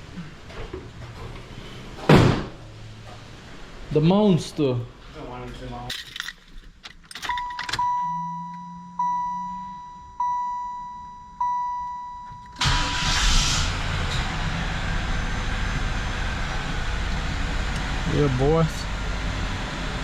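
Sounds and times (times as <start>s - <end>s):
car engine starting and idling: 6.1s - 20.0s
car warning chime dinging: 7.2s - 13.1s
low hum: 7.3s - 20.0s.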